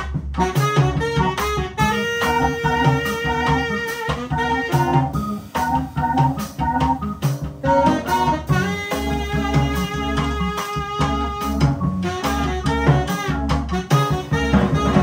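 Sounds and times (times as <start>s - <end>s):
live jazz band playing: 0.0s - 15.0s
organ chords: 0.0s - 15.0s.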